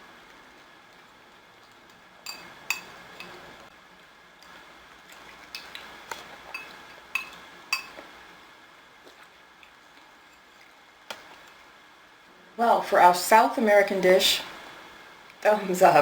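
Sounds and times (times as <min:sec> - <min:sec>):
utensil clinking against dish: 0:02.3 - 0:03.4, 0:06.5 - 0:08.0.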